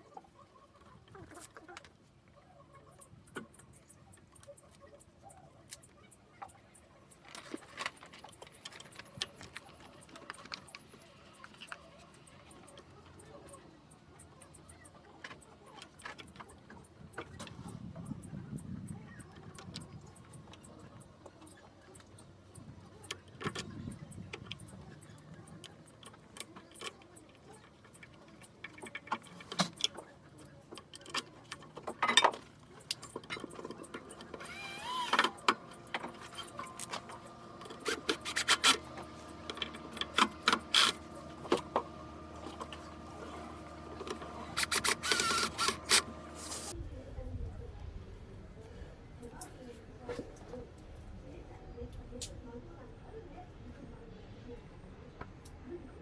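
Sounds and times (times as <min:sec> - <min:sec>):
faint steady hum: 0:00.0 - 0:56.0
tools and parts clicking and knocking: 0:19.4 - 0:46.7.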